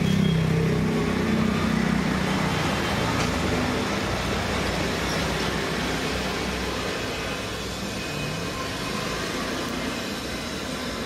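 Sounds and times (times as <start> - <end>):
road traffic: 0.0 - 11.0.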